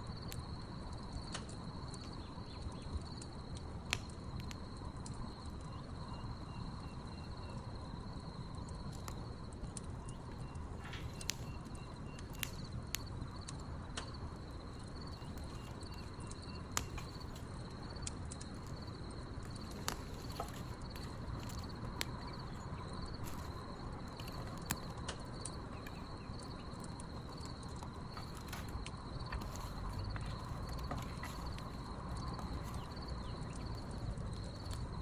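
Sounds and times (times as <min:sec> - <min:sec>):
wood fire crackling and popping: 0:00.0 - 0:35.0
high cricket trill: 0:05.3 - 0:35.0
faint pulsed chirps: 0:14.1 - 0:35.0.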